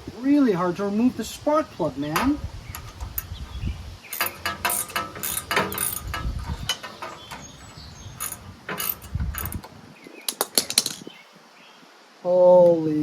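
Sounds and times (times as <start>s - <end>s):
ratchet wrench clicking: 2.2s - 9.8s.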